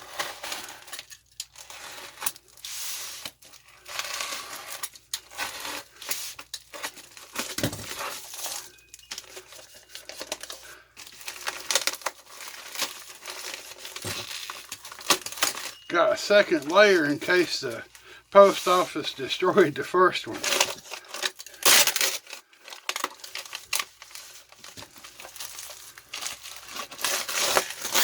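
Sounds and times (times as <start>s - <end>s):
package wrapping tearing and crinkling: 9.2s - 15.8s, 20.4s - 28.0s.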